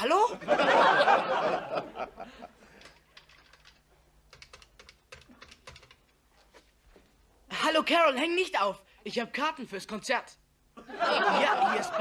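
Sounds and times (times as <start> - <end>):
audience laughter: 0.4 - 2.6, 10.8 - 12.0.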